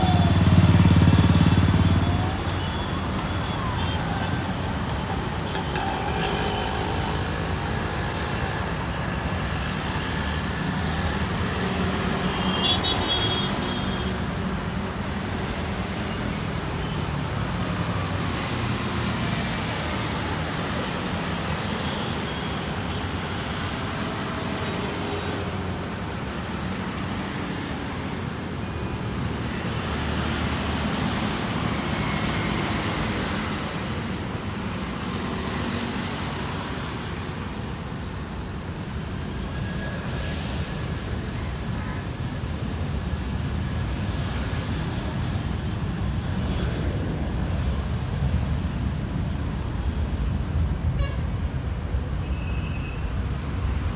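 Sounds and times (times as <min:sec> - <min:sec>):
vehicle passing: 0:00.0 - 0:09.0
road traffic rumble: 0:00.0 - 0:53.9.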